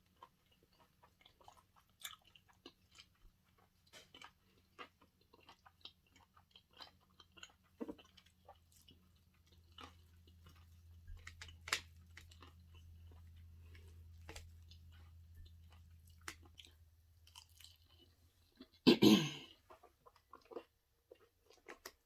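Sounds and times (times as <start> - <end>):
faint low hum: 8.0 - 18.7.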